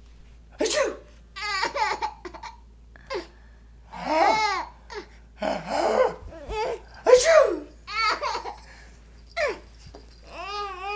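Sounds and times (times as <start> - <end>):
baby laughing and babbling: 1.4 - 3.2, 4.1 - 5.1, 5.8 - 8.7.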